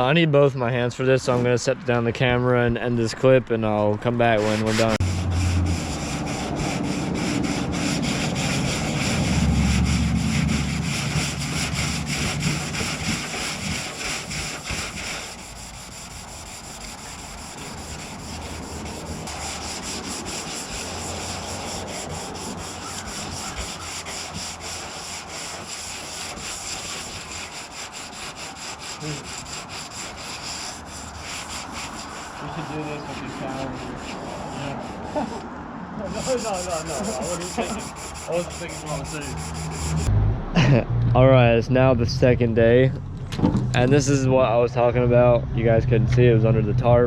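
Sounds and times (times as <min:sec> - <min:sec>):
sandpaper rubbing on painted steel: 0:04.3 - 0:40.1.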